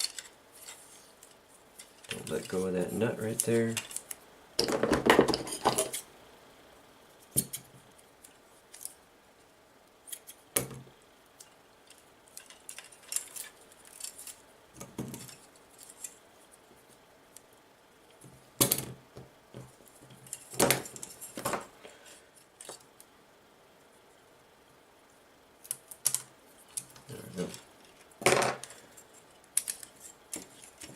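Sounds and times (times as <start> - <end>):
small parts clicking and tapping: 0.0 - 6.0, 10.1 - 16.2, 25.6 - 30.9.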